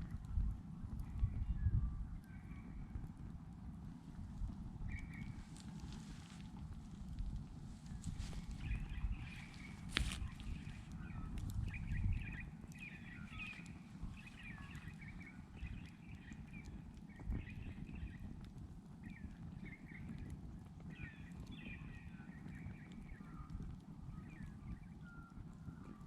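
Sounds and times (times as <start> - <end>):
campfire crackling and popping: 0.0 - 1.5, 2.1 - 26.0
low rumbling background: 0.0 - 22.1
birds chirping and warbling: 4.8 - 7.0, 7.7 - 18.4, 19.0 - 26.0.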